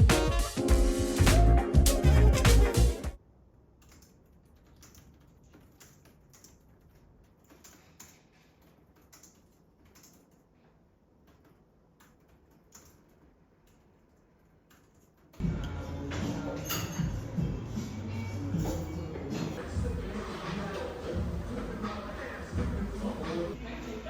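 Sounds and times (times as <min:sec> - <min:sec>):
background music: 0:00.0 - 0:03.2, 0:15.4 - 0:24.0.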